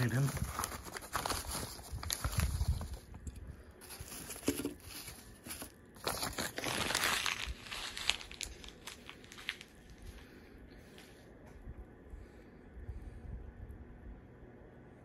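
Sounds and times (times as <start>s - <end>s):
packaging crinkling and rustling: 0.0s - 10.2s.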